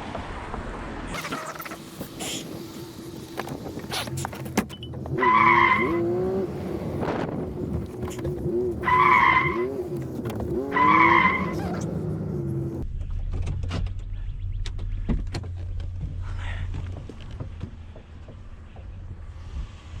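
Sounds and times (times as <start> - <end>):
high squeals: 4.8 - 6.2, 8.8 - 9.9, 10.6 - 12.0.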